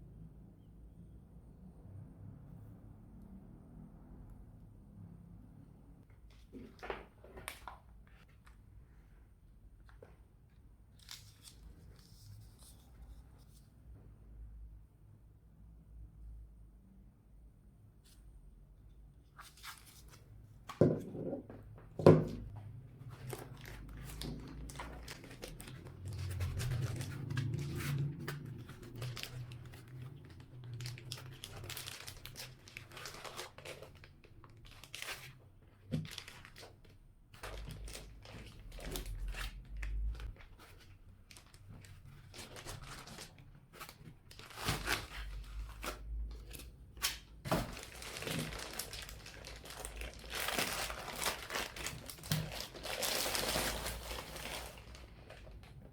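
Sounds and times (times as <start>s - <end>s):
packaging torn and crinkled: 23.2s - 35.4s, 36.0s - 36.7s, 41.3s - 43.4s, 44.3s - 46.3s, 47.0s - 55.7s.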